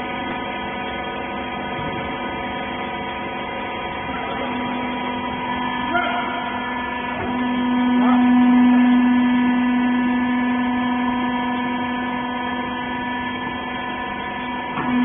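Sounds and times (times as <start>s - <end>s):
hydraulic power unit humming: 0.0s - 15.0s.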